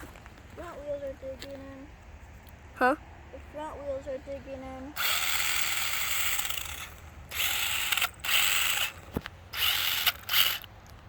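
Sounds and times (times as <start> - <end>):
toy car electric motor whirring: 5.0 - 10.7.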